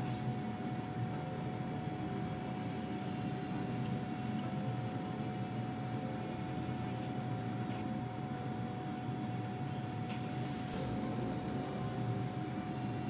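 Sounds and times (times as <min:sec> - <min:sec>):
steady machine hum with whine: 0:00.0 - 0:13.0.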